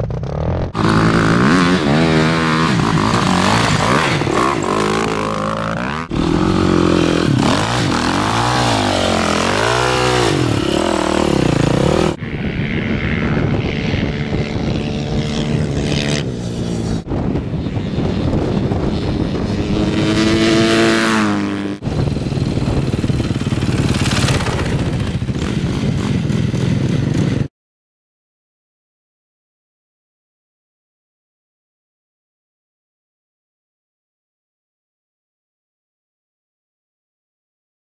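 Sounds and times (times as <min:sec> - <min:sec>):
motocross bike engines revving: 0:00.0 - 0:27.5.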